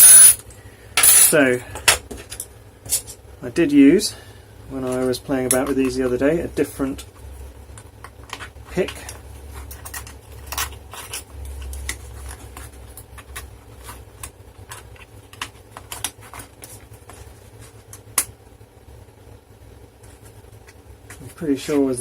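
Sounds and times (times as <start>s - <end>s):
low steady hum: 0.0s - 22.0s
metal tools clicking and clinking: 1.0s - 3.1s.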